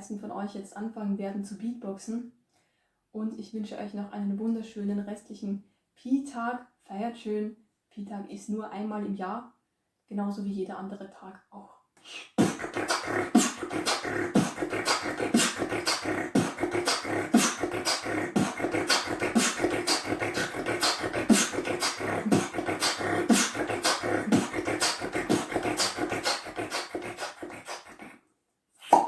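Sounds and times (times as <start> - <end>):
vocal beatbox beat: 12.0 - 28.2.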